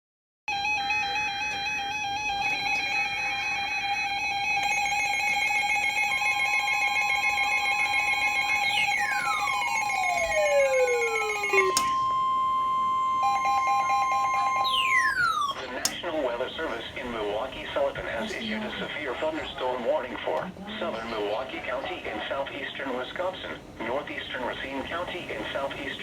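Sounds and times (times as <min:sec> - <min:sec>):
second steady tone: 0:00.5 - 0:15.6
falling pitch sweeps: 0:00.6 - 0:15.6
warbling synthesized tone: 0:00.7 - 0:15.7.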